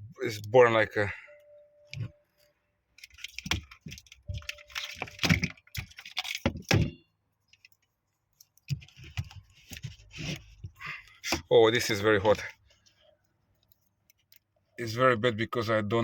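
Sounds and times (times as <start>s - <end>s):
handling clicks and knocks: 3.0s - 11.5s.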